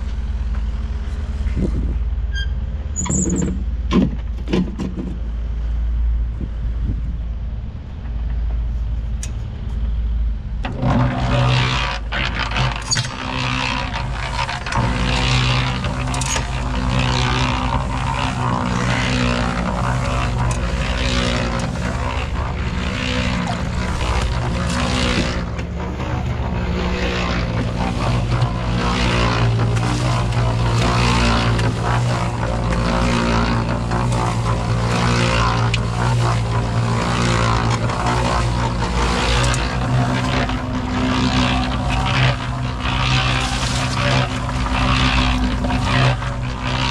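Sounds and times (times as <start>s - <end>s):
vehicle engine rumbling: 0.0s - 46.9s.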